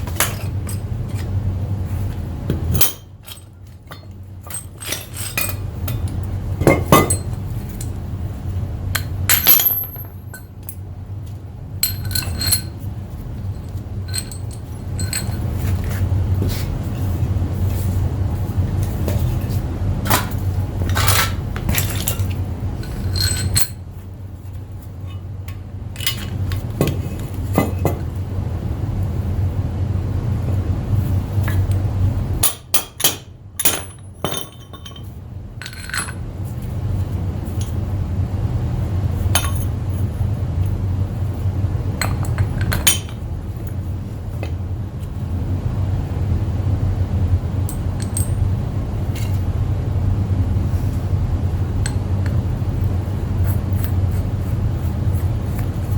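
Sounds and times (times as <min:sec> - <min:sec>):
steady low hum: 0:00.0 - 0:55.9
metal tools clinking: 0:09.0 - 0:10.7, 0:11.8 - 0:12.8, 0:14.1 - 0:15.9, 0:20.9 - 0:23.8.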